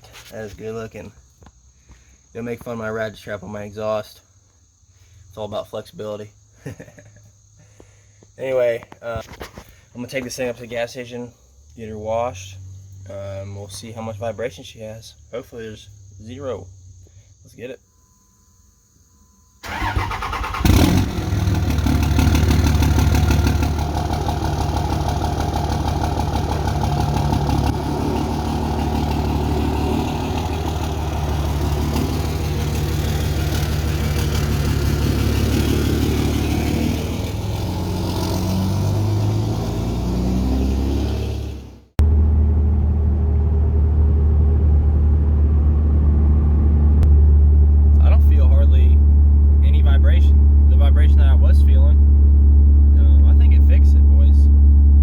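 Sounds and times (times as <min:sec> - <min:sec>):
diesel engine starting and running: 0:19.6 - 0:55.0.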